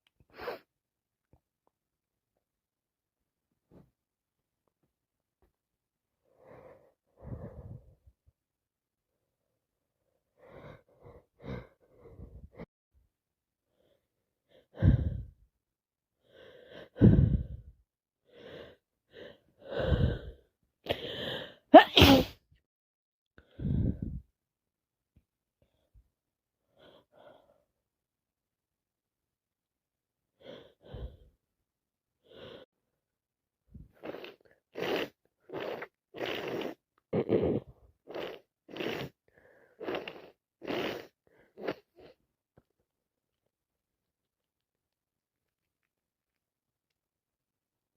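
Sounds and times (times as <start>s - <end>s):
gasping in-breaths: 14.6s - 15.4s, 16.2s - 17.7s, 18.3s - 21.6s
woman sneezing: 21.8s - 22.4s.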